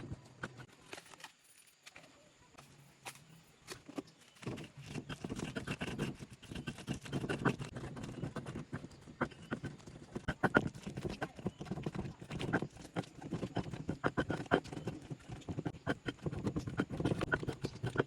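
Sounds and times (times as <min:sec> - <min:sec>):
pestle knocking in stone mortar: 0:04.4 - 0:18.0.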